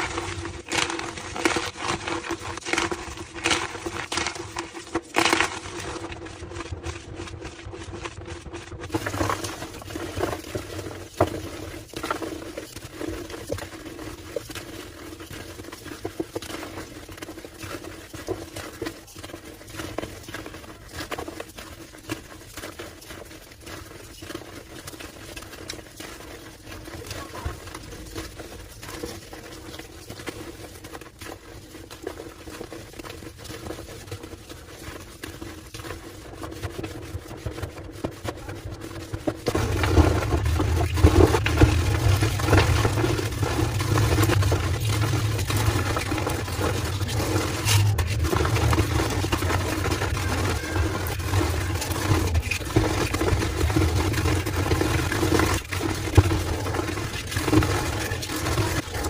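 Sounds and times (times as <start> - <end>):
chalk being crushed: 0.0 - 6.6, 33.2 - 59.0.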